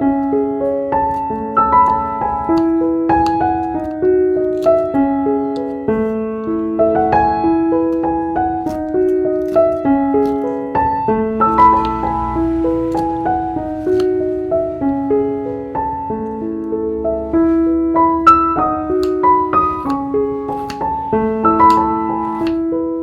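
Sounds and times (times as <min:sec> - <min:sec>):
piano melody: 0:00.0 - 0:23.0.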